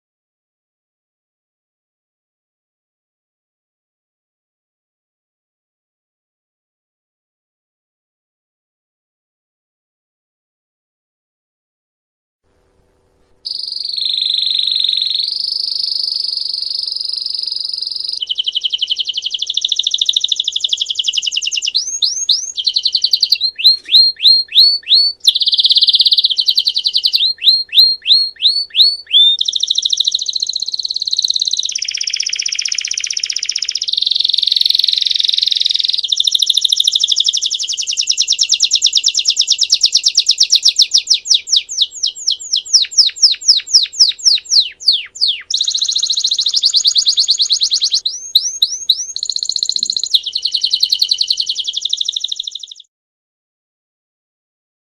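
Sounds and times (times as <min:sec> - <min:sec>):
canary singing trills: 0:13.4 - 0:52.9.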